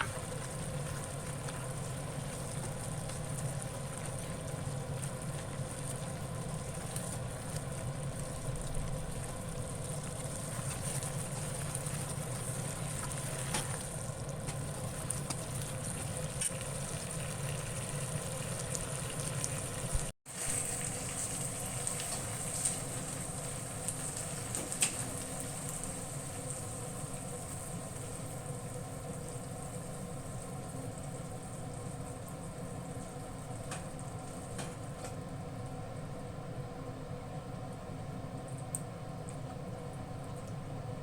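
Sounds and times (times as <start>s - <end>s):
food sizzling in frying pan: 0.0s - 35.2s.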